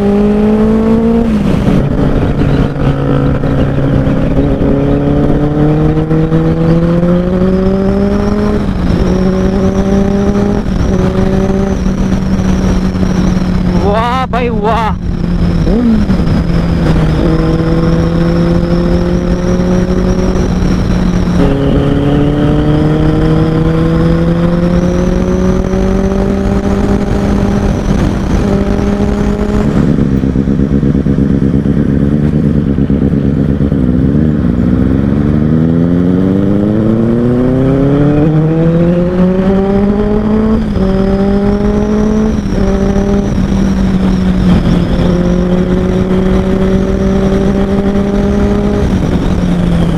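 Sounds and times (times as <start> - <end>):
motorcycle engine revving through gears: 0.0 - 49.9.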